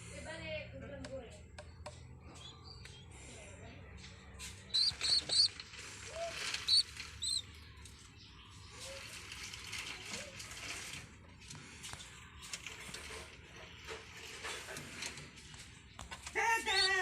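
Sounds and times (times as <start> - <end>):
feathers rustling: 4.4 - 7.5
pigeon squabs peeping: 4.4 - 7.8.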